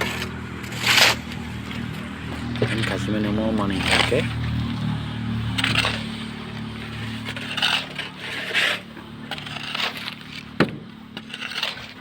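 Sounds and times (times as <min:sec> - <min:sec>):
scraping and rubbing: 0:00.0 - 0:12.0.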